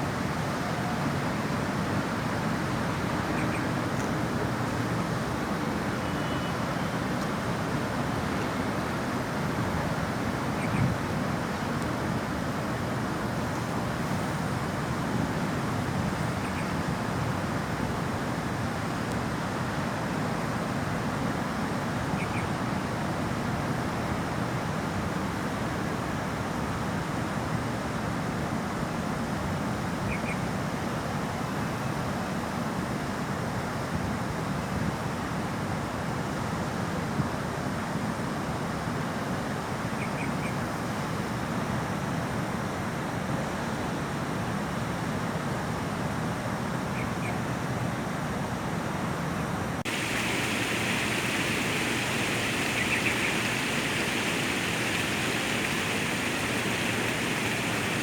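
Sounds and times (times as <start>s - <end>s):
waterfall rushing: 49.9s - 58.0s.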